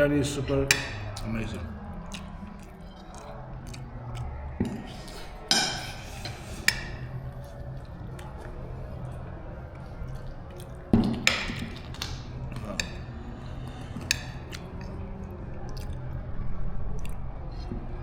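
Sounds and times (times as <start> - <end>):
chewing: 0.0 - 18.0
cutlery clinking on plate: 4.6 - 7.2, 11.0 - 13.1.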